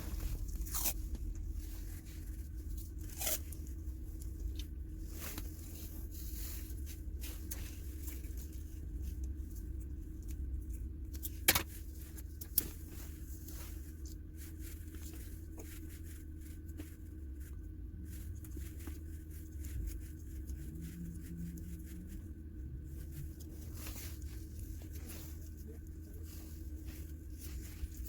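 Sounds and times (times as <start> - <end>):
steady low hum: 0.0 - 28.0
small clicks and handling noises: 6.9 - 17.6.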